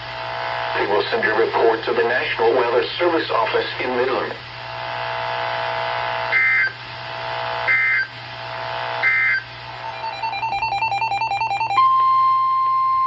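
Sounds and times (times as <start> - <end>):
steady background tone: 9.7 - 11.8
warbling digital bursts: 9.7 - 11.8
rapid pulsing beep: 9.7 - 11.9.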